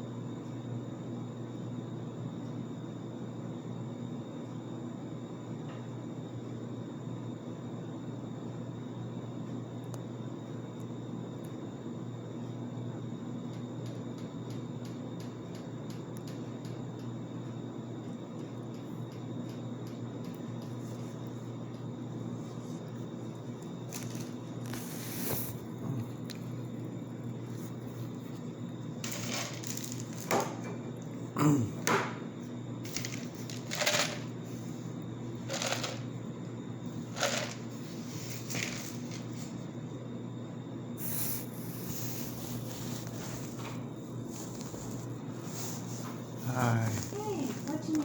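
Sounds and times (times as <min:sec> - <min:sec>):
electrical hum: 0:00.0 - 0:48.0.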